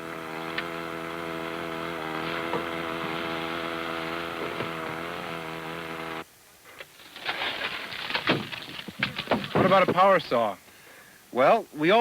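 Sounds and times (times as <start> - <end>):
small gasoline engine running: 0.0 - 6.2.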